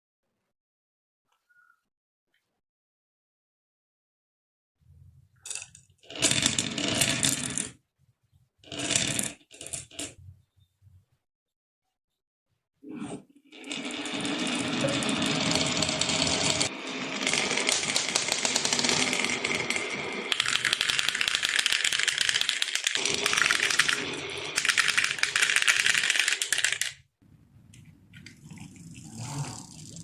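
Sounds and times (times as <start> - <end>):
marbles rattling down wooden run: 13.6 - 27.0.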